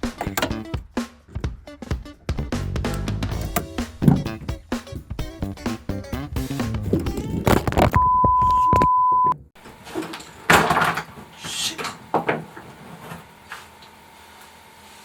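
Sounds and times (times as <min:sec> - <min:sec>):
handling clunks and rustles: 0:00.0 - 0:01.6, 0:02.8 - 0:04.6, 0:06.7 - 0:08.9, 0:09.6 - 0:13.3
high electronic beep: 0:08.0 - 0:09.4.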